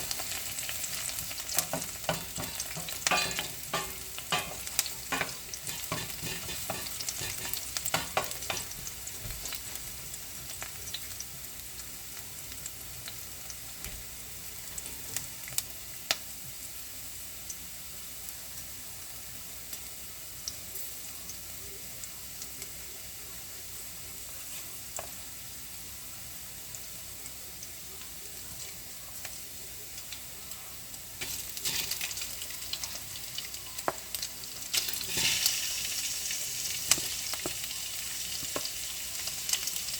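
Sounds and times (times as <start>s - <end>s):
food sizzling in a frying pan: 0.0s - 39.9s
utensil scraping a pan: 1.6s - 8.9s, 34.9s - 35.6s.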